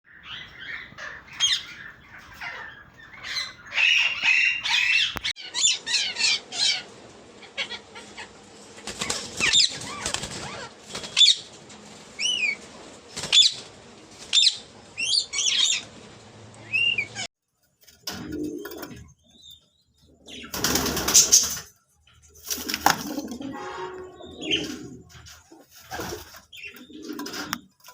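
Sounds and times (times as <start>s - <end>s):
birds chirping and squawking: 0.0s - 17.3s, 18.2s - 27.8s
wing flapping: 6.9s - 16.8s, 20.4s - 23.4s, 24.6s - 27.9s.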